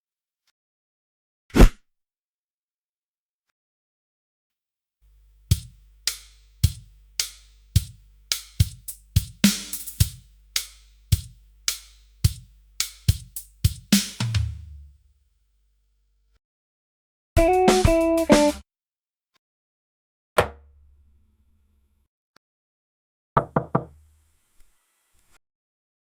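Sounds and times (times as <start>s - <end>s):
sharp pop sound effects: 1.5s - 1.8s
steady low hum: 5.1s - 14.0s.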